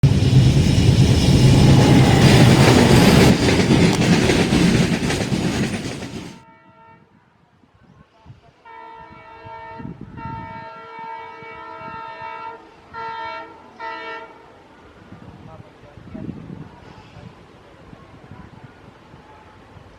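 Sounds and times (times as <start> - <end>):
train wheels clattering on rail: 0.0 - 6.4
train horn blasts: 6.4 - 7.2, 8.6 - 14.6.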